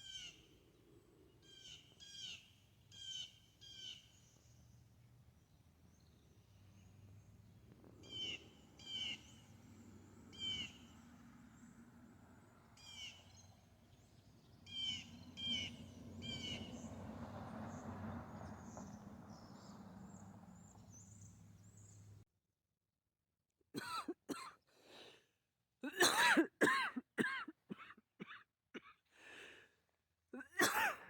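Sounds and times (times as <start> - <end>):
bird chirping call: 0.0 - 17.1, 17.7 - 22.2.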